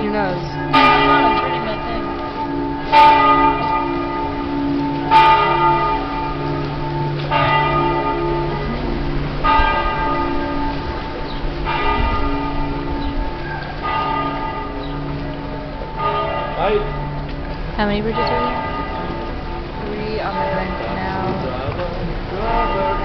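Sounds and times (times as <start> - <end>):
church bell striking: 0.0 - 23.0
hum of deeper bells: 0.0 - 23.0.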